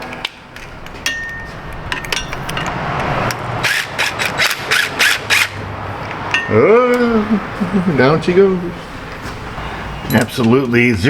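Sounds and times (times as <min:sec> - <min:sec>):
sharp metallic knocks: 0:00.9 - 0:06.7.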